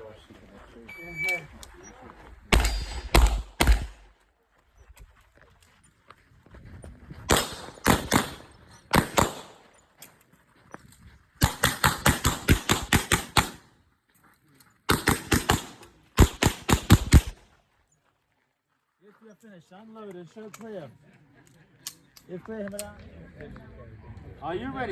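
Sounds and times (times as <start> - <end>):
pistol shots: 2.5 - 4.2, 7.3 - 9.7, 11.4 - 13.6, 14.9 - 17.4.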